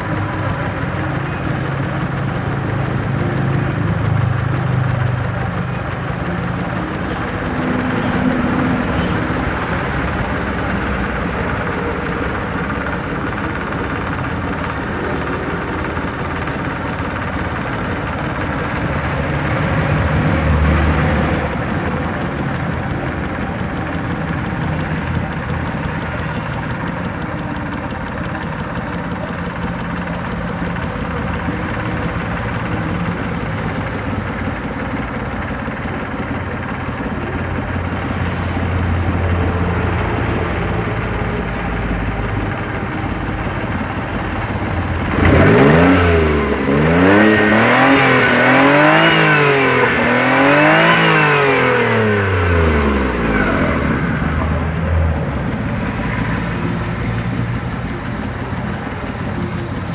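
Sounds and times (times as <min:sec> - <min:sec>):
car engine idling with ticking: 0:00.0 - 0:59.9
engine revving: 0:00.0 - 0:59.9.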